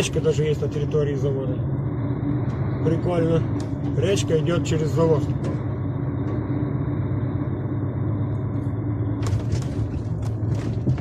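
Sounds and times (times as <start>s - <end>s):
diesel truck engine rumbling: 0.0s - 11.0s.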